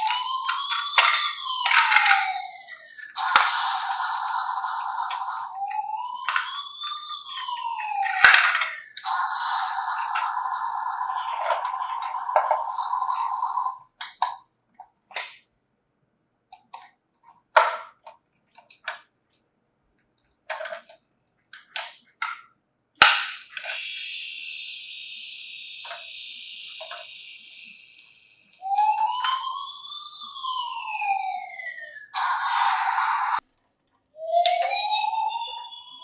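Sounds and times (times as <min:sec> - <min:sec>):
high electronic tone: 0:00.0 - 0:13.8, 0:23.6 - 0:33.4
toy siren sound effect: 0:00.0 - 0:13.9, 0:23.0 - 0:33.4, 0:34.2 - 0:36.0.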